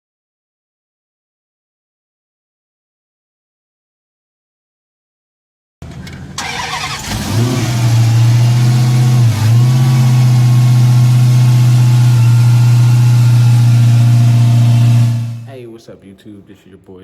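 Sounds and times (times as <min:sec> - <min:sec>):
car engine cranking and revving: 0:05.8 - 0:15.5.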